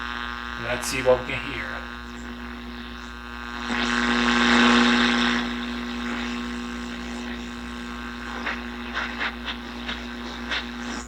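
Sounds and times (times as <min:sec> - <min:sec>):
radio static hiss: 0:00.0 - 0:11.0
steady hum: 0:00.0 - 0:11.0
radio station breaking through: 0:00.6 - 0:02.2.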